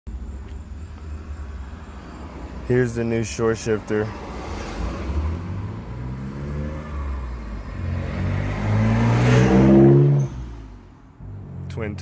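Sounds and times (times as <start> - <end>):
car engine accelerating: 3.9 - 12.0.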